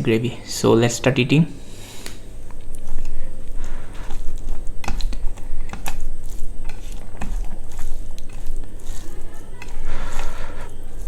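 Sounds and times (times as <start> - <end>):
person chewing food: 1.8 - 11.0
food handled on a plate: 2.1 - 11.0.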